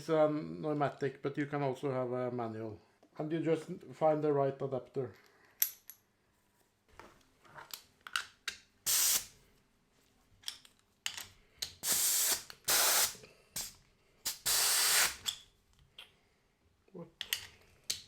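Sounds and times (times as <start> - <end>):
compressed air hissing bursts: 8.9 - 9.4, 11.8 - 15.2.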